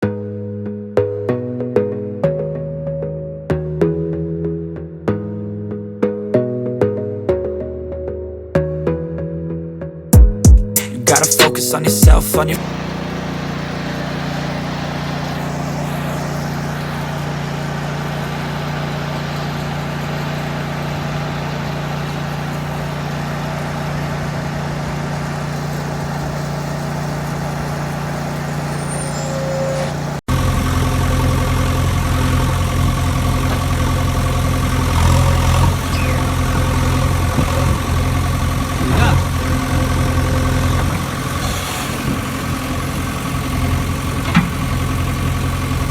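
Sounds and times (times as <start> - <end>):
vehicle engine running: 10.4 - 45.9
loud rough engine: 10.8 - 45.9.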